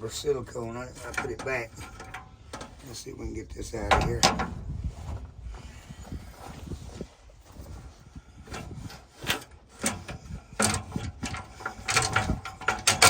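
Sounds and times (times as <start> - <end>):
metal parts scraping and clicking: 0.9 - 2.9, 8.5 - 13.0.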